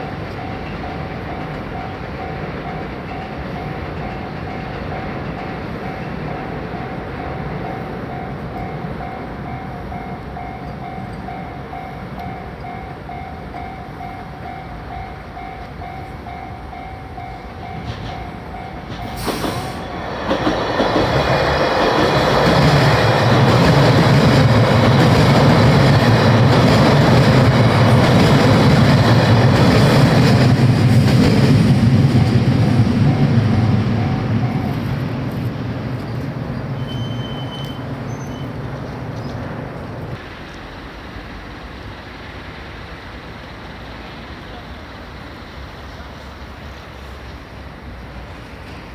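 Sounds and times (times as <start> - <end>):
level-crossing warning bell dinging: 0.0 - 19.3, 32.0 - 35.4
train wheels rumbling on rails: 0.0 - 48.9.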